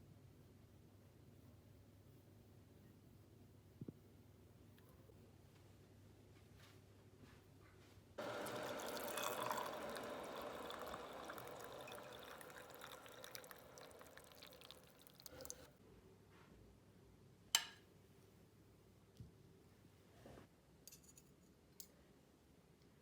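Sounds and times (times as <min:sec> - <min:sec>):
water running: 0:08.2 - 0:15.7.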